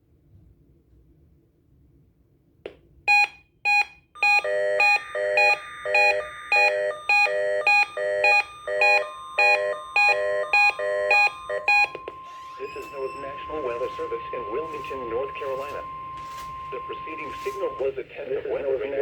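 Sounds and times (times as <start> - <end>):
rapid repeating alert beeps: 3.1 - 17.9
steady warning alarm tone: 3.1 - 19.0
buzzy digital header data: 9.0 - 17.9.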